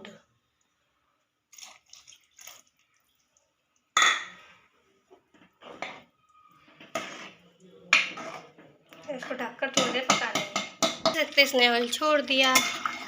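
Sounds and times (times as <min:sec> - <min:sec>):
liquid splashing into pan: 0:01.5 - 0:04.4, 0:09.7 - 0:13.0
metal utensil clanking on pan: 0:09.7 - 0:11.3, 0:12.4 - 0:13.0.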